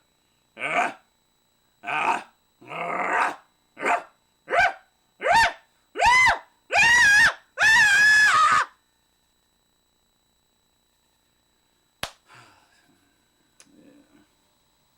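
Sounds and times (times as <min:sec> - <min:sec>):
person barking and growling: 0:00.6 - 0:01.0, 0:01.8 - 0:05.6
person yelping: 0:00.6 - 0:01.0
person shrieking: 0:04.5 - 0:08.7.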